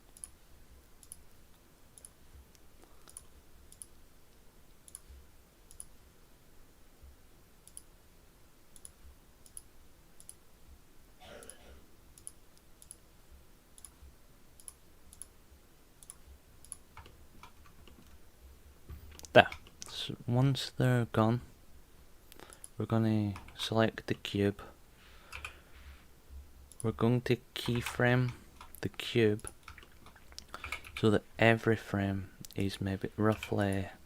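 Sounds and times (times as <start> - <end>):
faint computer mouse clicks: 1.0 - 1.3, 2.0 - 4.0, 7.6 - 7.9, 8.8 - 10.4, 12.2 - 13.0, 13.8 - 14.0, 14.6 - 15.3.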